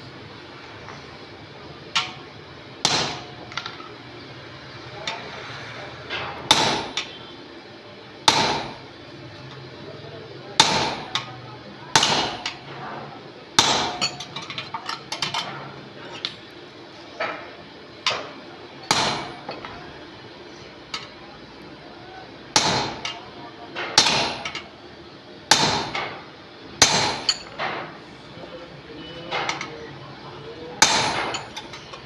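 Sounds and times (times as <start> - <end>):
hammer striking metal: 2.8 - 3.9, 6.5 - 7.3, 8.3 - 8.9, 10.6 - 11.3, 12.0 - 12.7, 13.6 - 14.5, 18.9 - 19.7, 22.6 - 23.3, 24.0 - 24.7, 25.5 - 26.2, 26.8 - 27.8, 30.8 - 31.9.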